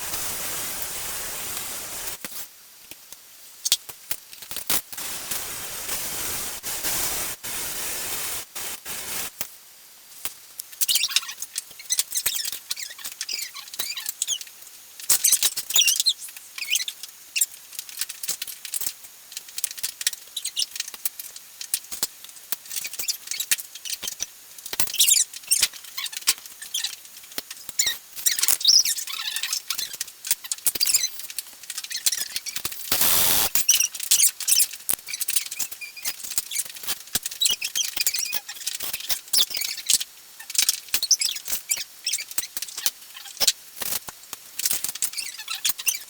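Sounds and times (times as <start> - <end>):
small hard parts clicking: 10.7 - 46.0.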